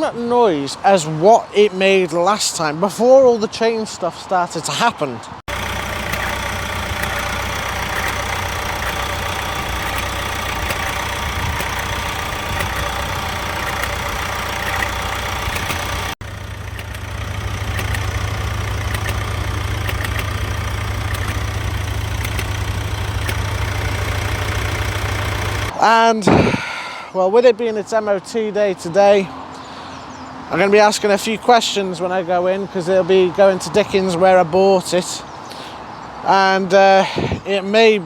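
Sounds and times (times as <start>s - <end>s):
diesel engine idling: 5.5s - 25.8s
engine clicks and rattles: 5.5s - 25.8s.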